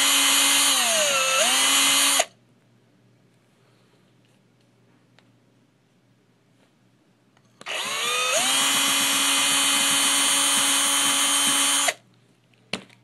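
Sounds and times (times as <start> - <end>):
electric drill spinning brush: 0.0 - 2.3, 7.6 - 12.0.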